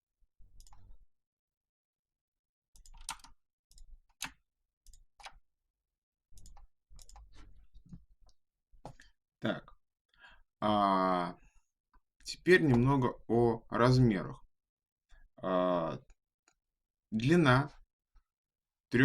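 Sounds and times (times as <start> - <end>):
computer mouse clicking: 2.8 - 5.4, 6.4 - 7.4.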